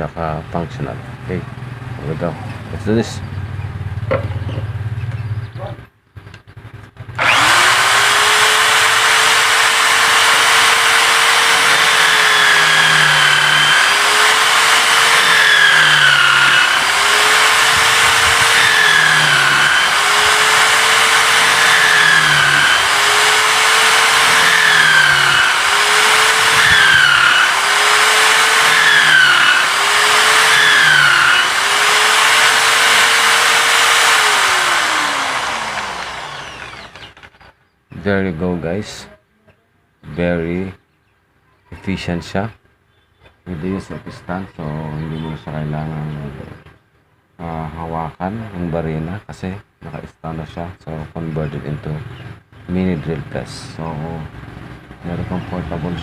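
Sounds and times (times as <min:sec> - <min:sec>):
electric drill boring wood: 0:07.2 - 0:37.4.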